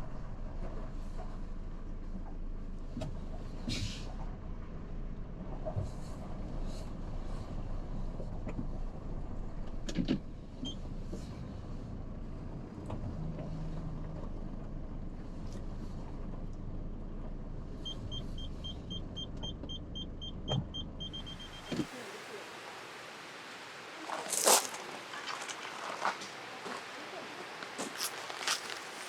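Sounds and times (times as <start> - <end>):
engine and road rumble: 0.0 - 29.0
parking sensor beeping: 17.8 - 22.0.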